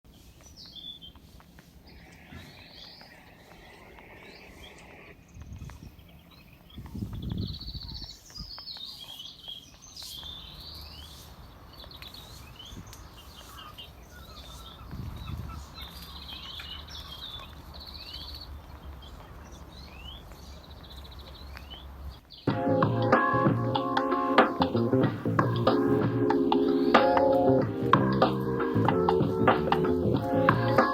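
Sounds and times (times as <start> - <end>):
songbirds chirping and singing: 0.1 - 30.9
music: 22.5 - 30.9.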